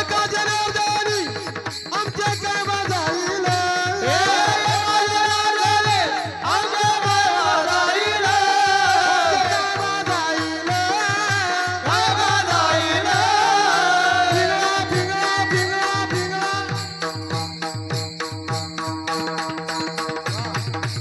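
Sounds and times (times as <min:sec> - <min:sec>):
man singing devotional folk song: 0:00.0 - 0:18.0
hand drum beat: 0:14.2 - 0:21.0.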